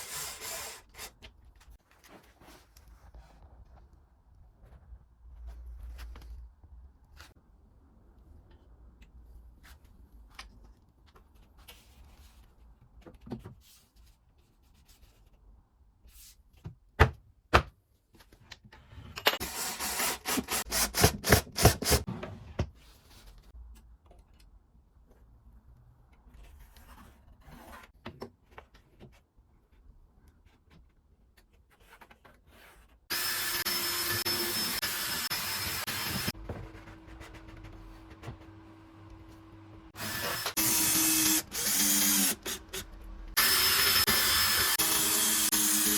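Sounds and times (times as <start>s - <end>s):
power tool running: 33.1s - 36.3s, 39.9s - 45.9s.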